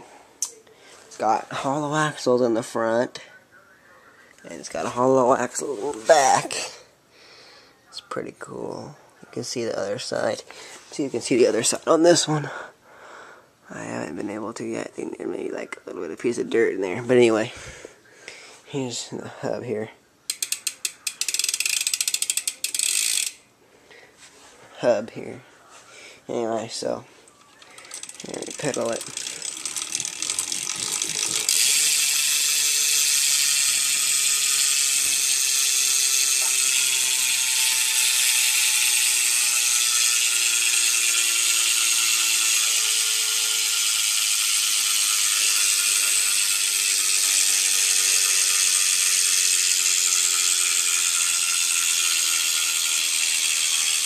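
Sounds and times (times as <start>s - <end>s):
bike freewheel ratchet whirring: 20.3s - 23.4s, 27.5s - 54.0s.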